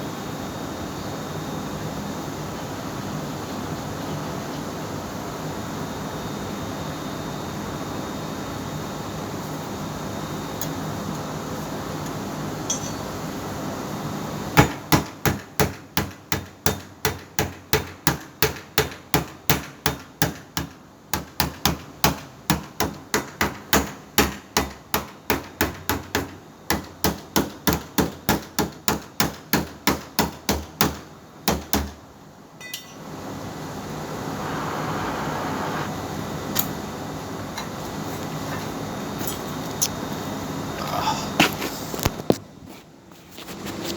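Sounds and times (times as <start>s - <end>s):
steady hiss: 33.0s - 36.9s.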